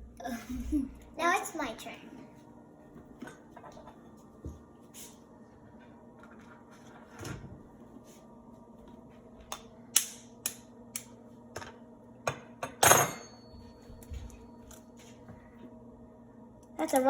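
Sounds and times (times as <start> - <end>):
dishes clinking: 12.3 - 13.7.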